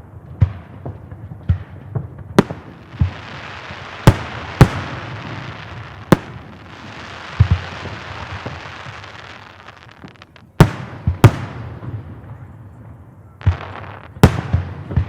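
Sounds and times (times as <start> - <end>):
crackling hiss of fireworks: 0.0 - 15.0
firework shells bursting: 2.4 - 11.3, 13.4 - 14.7.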